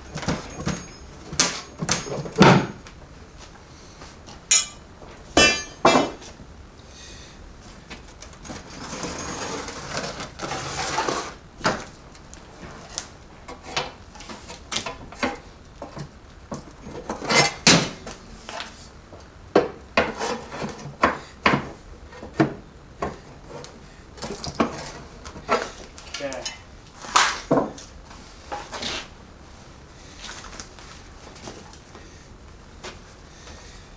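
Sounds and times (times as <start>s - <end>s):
metal knocks and clinks: 0.1s - 2.8s, 4.5s - 4.8s, 5.4s - 6.2s
metal scraping: 4.5s - 4.8s, 5.4s - 6.2s.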